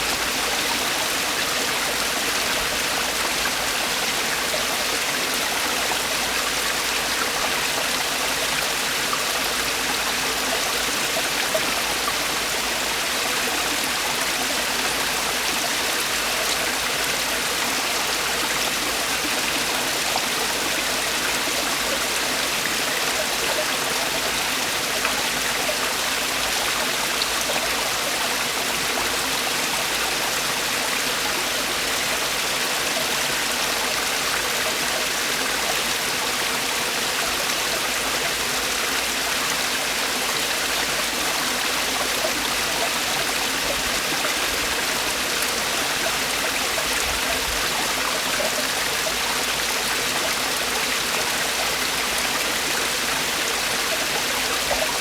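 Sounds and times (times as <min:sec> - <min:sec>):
stream water splashing over rocks: 0:00.0 - 0:55.0.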